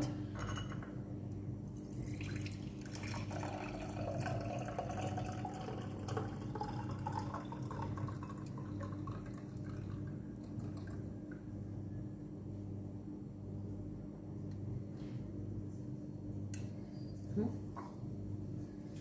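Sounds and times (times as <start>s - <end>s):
steady low hum: 0.0s - 19.0s
liquid trickling into a jar: 1.8s - 11.1s.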